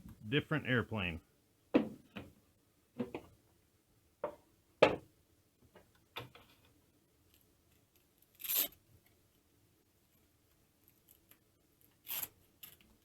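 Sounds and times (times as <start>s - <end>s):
knocks of plastic parts handled: 1.8s - 2.4s, 3.0s - 3.3s
hook-and-loop strap ripping open: 8.3s - 8.8s, 11.9s - 12.9s.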